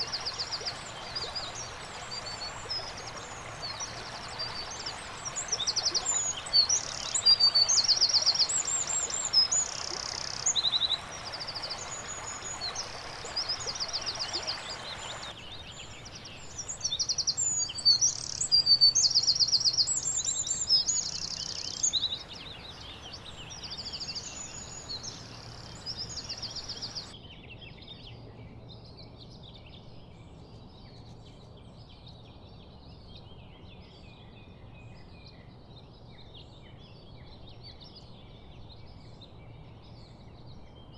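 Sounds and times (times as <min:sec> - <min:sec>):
faint chorus of bird chirps: 0:00.0 - 0:27.2
songbirds trilling: 0:00.0 - 0:27.2.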